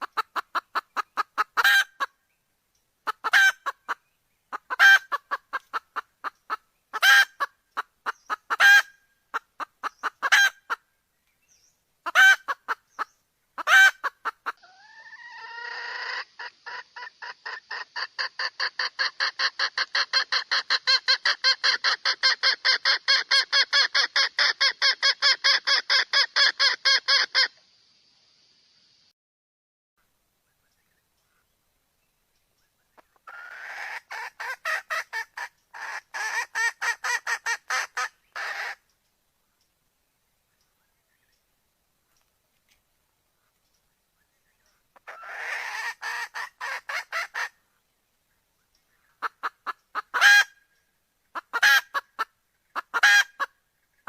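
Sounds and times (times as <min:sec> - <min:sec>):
hen clucking: 0:00.0 - 0:02.1, 0:03.0 - 0:10.8, 0:12.0 - 0:27.6, 0:33.0 - 0:38.9, 0:44.9 - 0:47.6, 0:49.1 - 0:50.6, 0:51.3 - 0:53.6.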